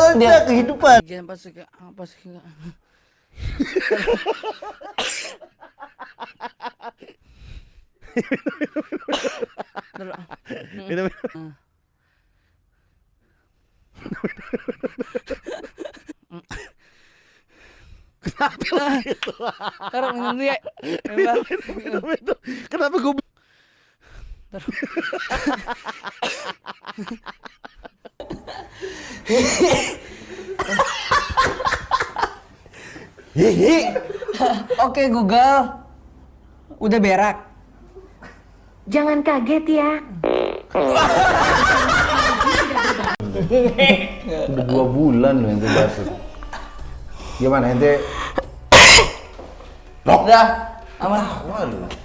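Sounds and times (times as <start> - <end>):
people laughing: 3.5 - 7.2, 8.0 - 11.6, 14.0 - 16.5, 18.2 - 22.6, 24.6 - 32.5, 33.4 - 35.0, 40.8 - 46.8
person coughing: 5.0 - 5.4, 29.3 - 30.0, 48.7 - 49.3.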